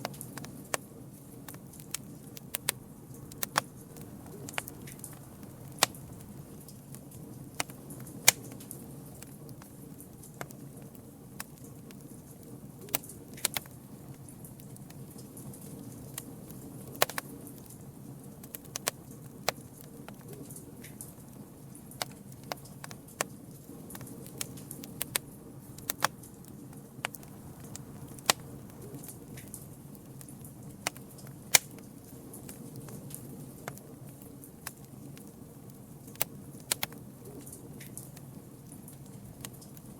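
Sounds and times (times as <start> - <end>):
campfire crackling and popping: 0.0 - 39.9
low rumble of flames: 0.0 - 39.9.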